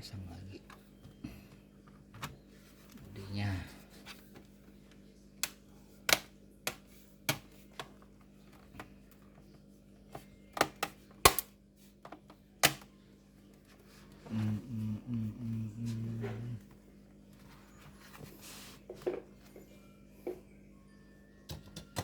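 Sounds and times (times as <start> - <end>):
plastic clips snapping into place: 10.6 - 11.5, 12.6 - 12.9.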